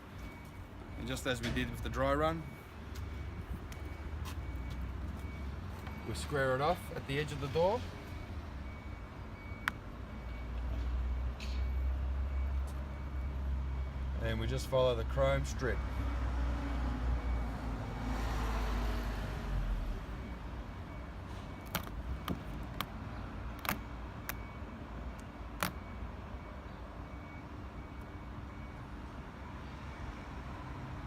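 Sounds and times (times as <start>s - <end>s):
sharp light plastic clicks: 21.6s - 22.9s.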